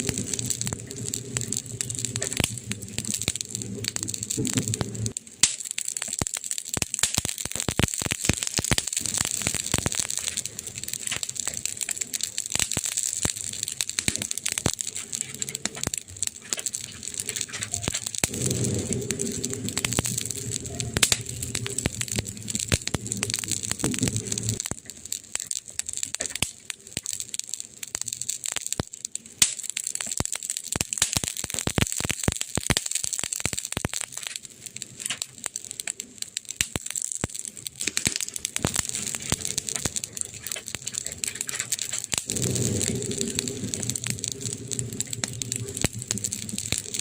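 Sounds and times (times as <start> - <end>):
burning wood crackling: 0.0 - 47.0
steady hiss: 37.8 - 47.0.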